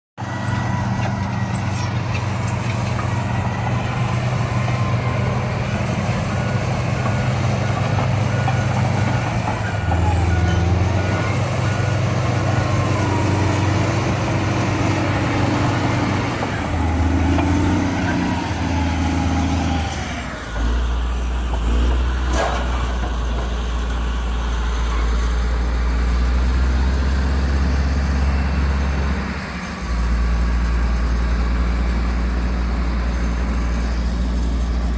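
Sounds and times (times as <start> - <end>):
bulldozer diesel engine running: 0.2 - 34.9.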